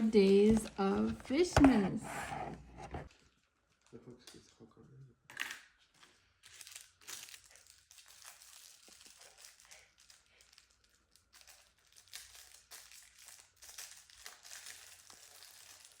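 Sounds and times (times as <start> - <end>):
packaging crinkling and rustling: 5.9 - 16.0.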